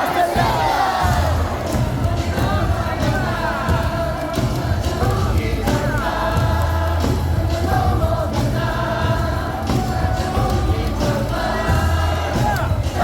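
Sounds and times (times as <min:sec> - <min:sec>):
crowd singing in unison: 0:00.0 - 0:13.0
loud music over stadium speakers: 0:00.0 - 0:13.0.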